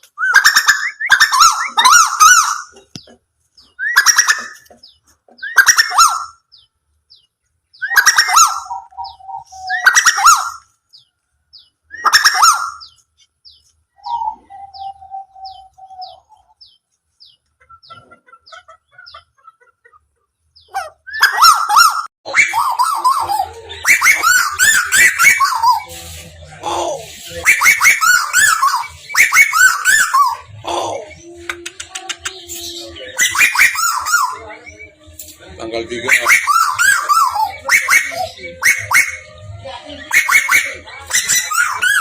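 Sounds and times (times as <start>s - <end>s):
bird harsh calls: 0.0s - 42.0s.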